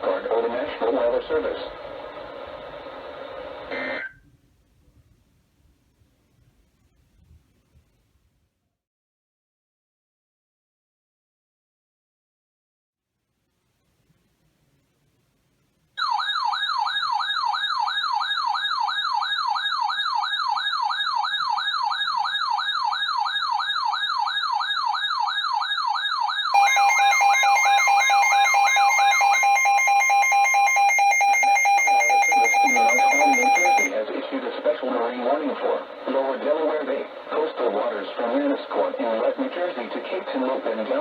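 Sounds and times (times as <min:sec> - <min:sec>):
warbling siren alarm: 0:16.0 - 0:33.9
steady alert tone: 0:26.6 - 0:33.9.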